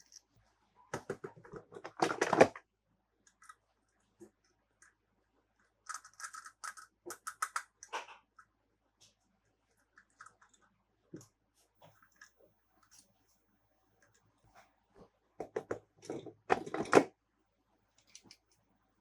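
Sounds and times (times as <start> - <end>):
plastic toy parts clicking and rattling: 5.8 - 8.1.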